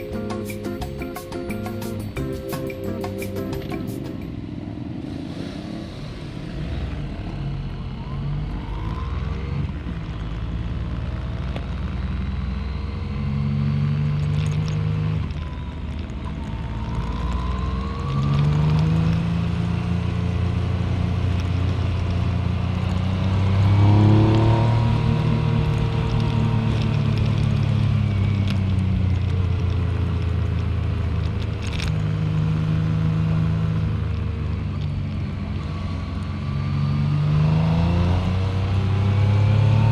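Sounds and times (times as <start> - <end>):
wind and road noise: 0.0 - 39.9
motorcycle engine revving: 17.0 - 28.3.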